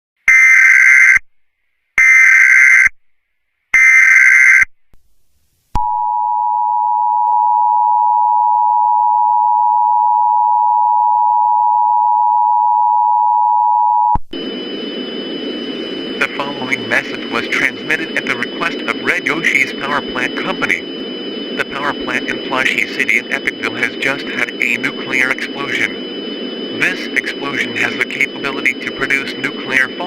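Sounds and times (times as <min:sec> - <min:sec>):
noisy hum with high tones: 0:14.1 - 0:30.0
digital data bursts: 0:15.8 - 0:26.0, 0:26.7 - 0:30.0.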